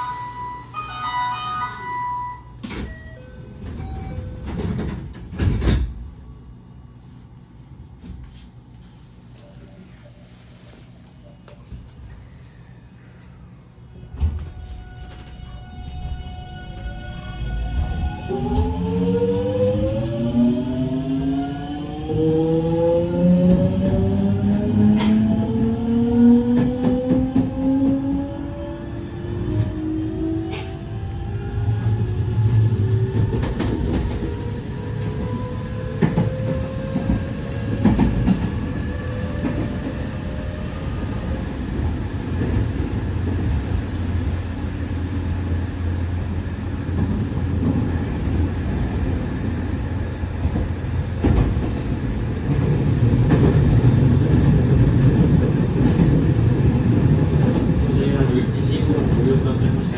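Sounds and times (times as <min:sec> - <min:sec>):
electric train inverter tones: 0:00.0 - 0:05.4, 0:13.9 - 0:22.6
train running noise: 0:00.0 - 0:06.5, 0:13.7 - 0:29.8, 0:30.5 - 0:59.9.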